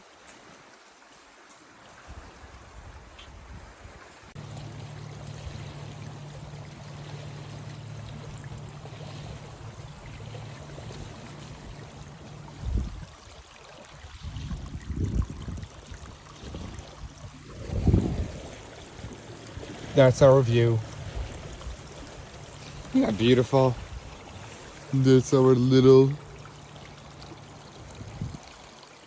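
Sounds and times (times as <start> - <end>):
water flowing: 0.0 - 29.0
dull low thumps: 4.4 - 13.1
low steady hum: 4.4 - 13.2, 13.9 - 28.7.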